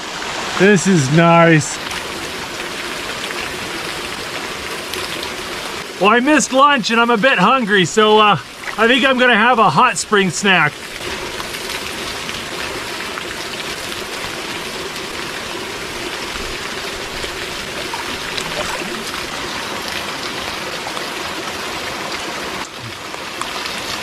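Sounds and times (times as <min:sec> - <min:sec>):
rain: 0:00.0 - 0:24.0
water pouring into pool: 0:10.5 - 0:24.0.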